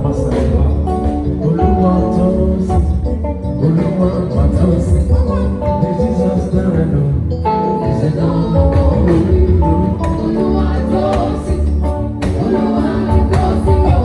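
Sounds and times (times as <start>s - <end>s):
live band music: 0.0s - 14.0s
person singing: 0.0s - 14.0s
strong bass line: 0.0s - 14.0s.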